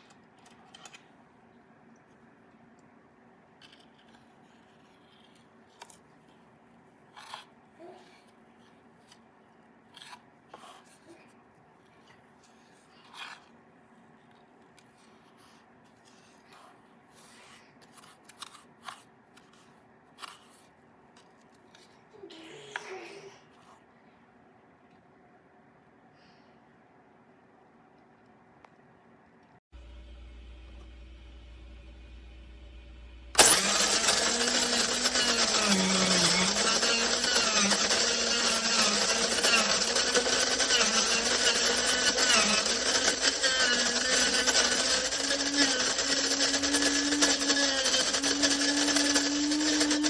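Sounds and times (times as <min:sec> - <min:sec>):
low steady hum: 0:21.9 - 0:33.8
electric coffee grinder running: 0:33.4 - 0:50.0.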